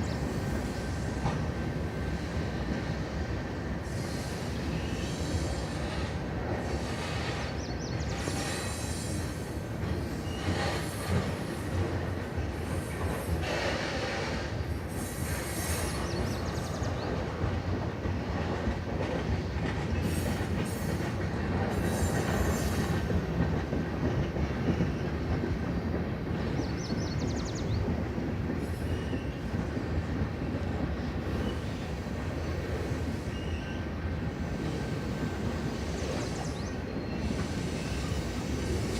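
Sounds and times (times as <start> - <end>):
freight train wheels rumbling: 0.0 - 38.9
train wheel squeals: 0.0 - 38.9.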